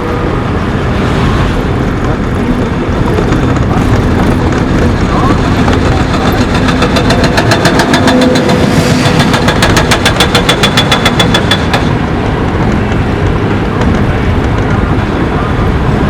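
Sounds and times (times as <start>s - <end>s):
motor rumble: 0.0s - 11.3s.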